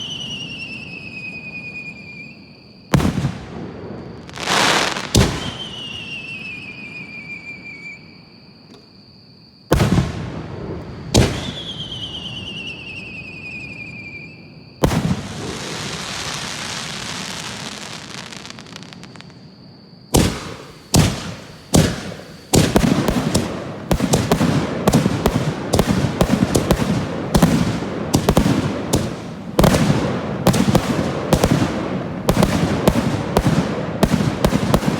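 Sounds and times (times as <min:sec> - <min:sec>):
falling firework whistle: 0:00.0 - 0:34.9
long firework hiss: 0:00.0 - 0:34.9
firework shells bursting: 0:20.1 - 0:34.9.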